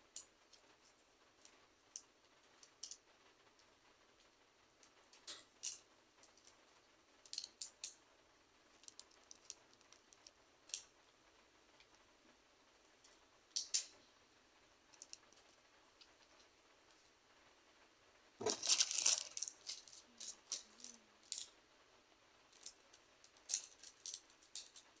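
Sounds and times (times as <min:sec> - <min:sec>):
plastic crinkling rustle: 0:18.4 - 0:21.6, 0:22.5 - 0:25.0.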